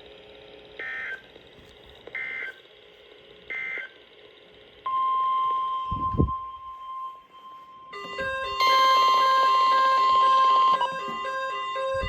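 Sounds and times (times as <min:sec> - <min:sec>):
steady warning alarm tone: 0:04.9 - 0:12.0.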